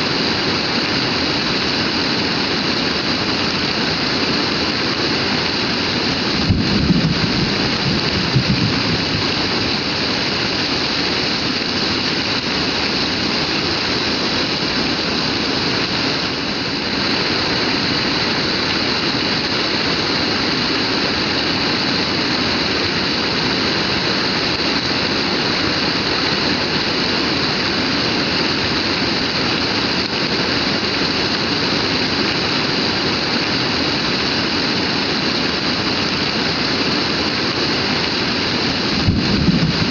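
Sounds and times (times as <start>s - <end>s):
heavy rain pouring: 0.0s - 39.9s.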